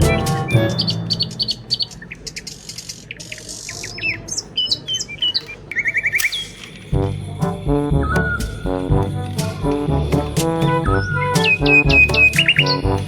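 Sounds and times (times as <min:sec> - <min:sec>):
background music: 0:00.0 - 0:01.6, 0:07.0 - 0:13.0
small birds chirping: 0:00.8 - 0:06.6.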